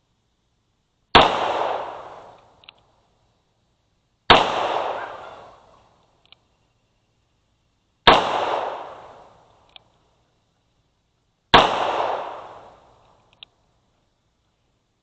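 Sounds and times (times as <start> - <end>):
revolver shots echoing: 4.3 - 5.6, 11.6 - 12.7.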